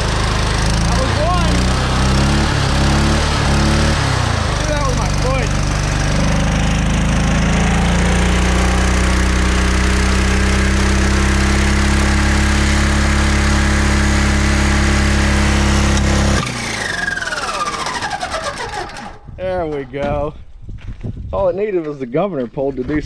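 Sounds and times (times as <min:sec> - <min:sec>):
engine spinning down whine: 0:00.0 - 0:19.8
lawn mower engine droning: 0:00.0 - 0:20.1.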